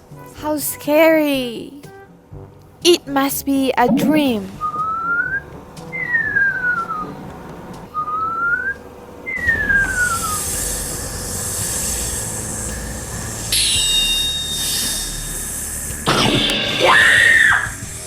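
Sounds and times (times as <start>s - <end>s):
gliding whistle: 4.6s - 7.1s, 7.9s - 12.6s, 13.5s - 17.9s
rushing hiss: 9.8s - 18.0s
loud pitched cry: 16.1s - 17.8s.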